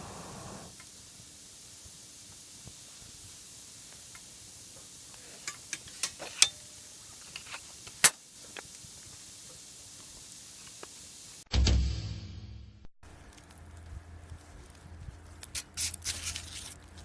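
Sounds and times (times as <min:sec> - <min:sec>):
wood fire crackling: 0:00.0 - 0:11.5, 0:13.0 - 0:17.0.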